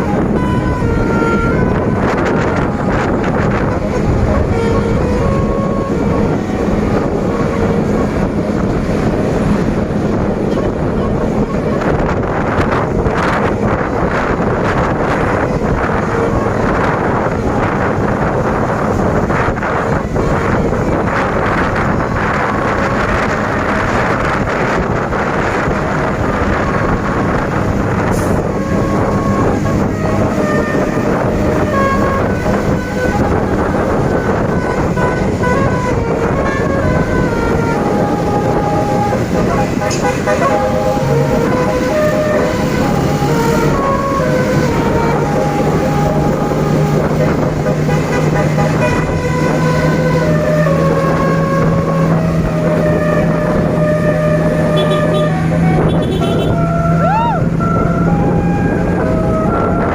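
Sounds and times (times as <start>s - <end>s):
large bus rumbling past: 0.0s - 59.9s
road noise: 0.0s - 59.9s
wind buffeting microphone: 0.0s - 59.9s.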